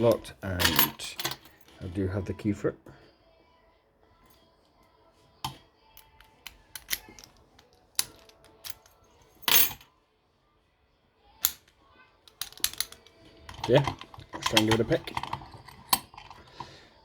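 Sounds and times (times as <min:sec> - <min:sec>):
padlock clicking with key: 0:06.0 - 0:09.8, 0:12.3 - 0:16.6.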